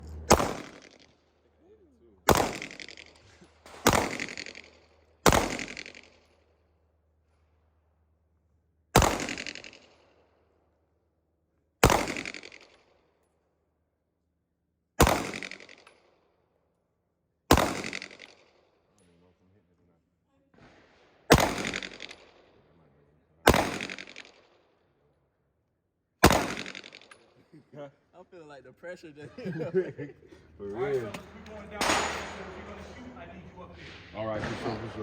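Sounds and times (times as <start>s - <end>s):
echoing gunshots: 0.0s - 1.4s, 2.2s - 6.5s, 8.9s - 10.4s, 11.8s - 13.0s, 15.0s - 16.2s, 17.5s - 18.7s, 20.6s - 22.6s, 23.4s - 24.8s, 26.2s - 27.3s, 31.7s - 33.0s, 33.8s - 35.0s.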